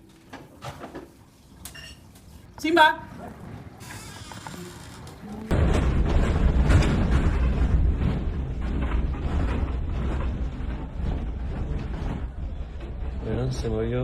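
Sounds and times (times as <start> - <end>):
deep earthquake rumble: 5.3 - 14.0.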